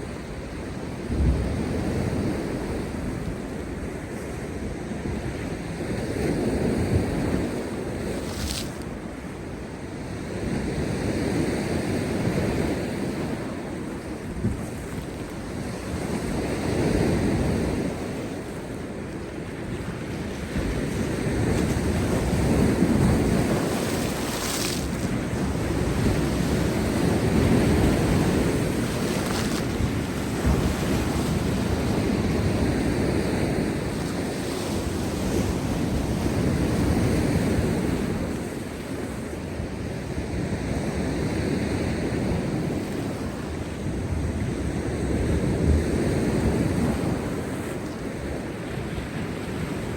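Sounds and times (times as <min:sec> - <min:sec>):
surf breaking on rocks: 0:19.9 - 0:38.0
spray splashing: 0:23.6 - 0:25.1.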